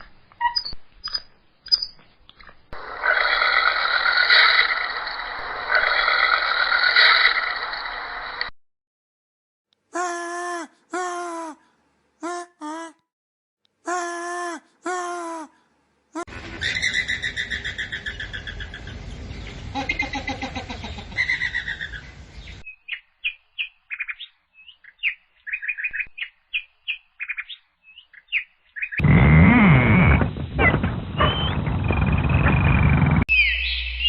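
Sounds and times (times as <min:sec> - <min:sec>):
birds chirping: 0:16.3 - 0:29.1, 0:30.6 - 0:32.4, 0:33.3 - 0:34.0.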